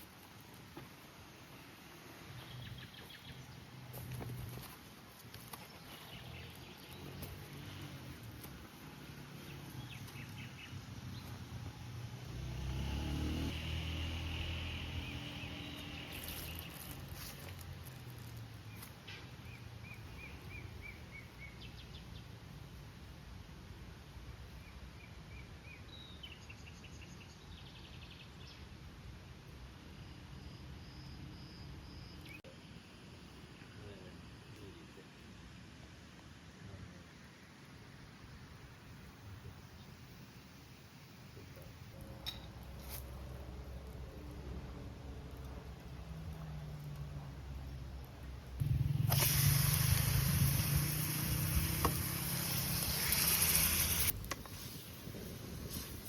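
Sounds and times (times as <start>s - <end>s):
small birds chirping: 1.4s - 8.5s, 9.4s - 11.5s, 14.8s - 22.4s.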